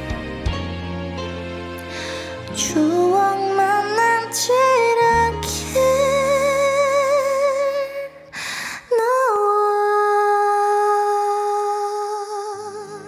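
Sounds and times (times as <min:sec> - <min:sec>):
low backing accompaniment: 0:00.0 - 0:08.3
singer breathing in: 0:01.8 - 0:02.4, 0:08.3 - 0:08.9.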